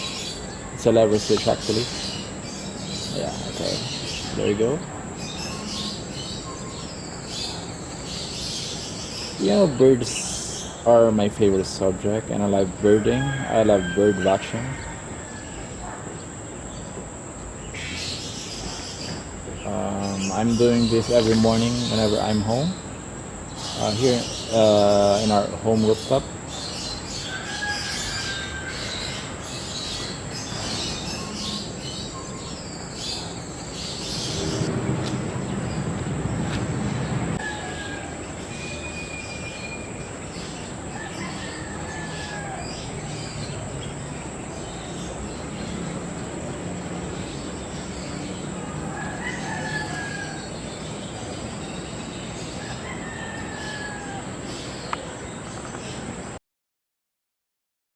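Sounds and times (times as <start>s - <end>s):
high thin whine: 33.5s - 37.4s
louder lower sound: 34.0s - 37.4s
whistled bird calls: 37.4s - 40.1s.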